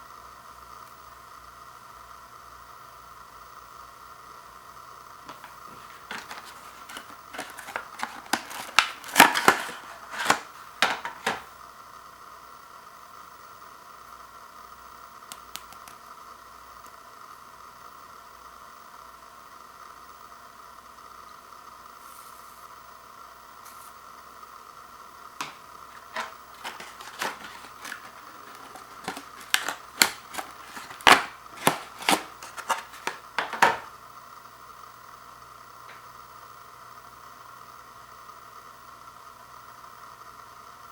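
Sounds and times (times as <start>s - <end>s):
faint steady hum: 0.0s - 40.9s
plastic packaging crackling: 5.3s - 11.5s, 25.5s - 33.9s.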